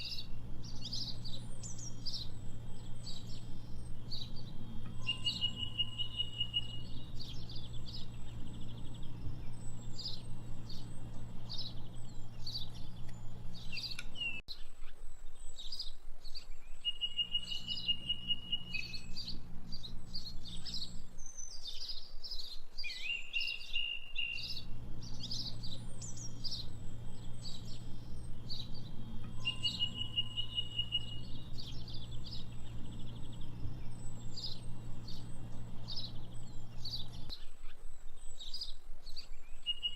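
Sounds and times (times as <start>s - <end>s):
high bird trill: 0.0s - 14.7s, 16.6s - 37.6s
birds chirping and singing: 0.0s - 39.9s
low steady hum: 0.0s - 39.9s.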